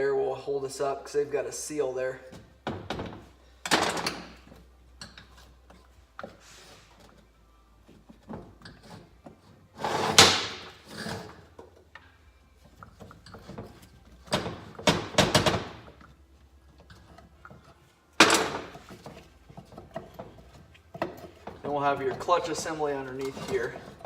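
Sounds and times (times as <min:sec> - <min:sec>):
engine cover clunks and knocks: 0:13.6 - 0:16.0.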